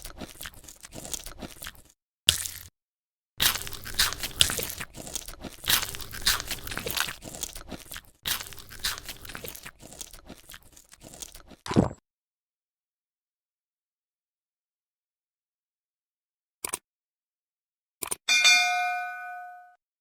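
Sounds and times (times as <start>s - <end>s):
crunching and chewing crisp food: 0.0s - 2.7s, 3.4s - 12.0s.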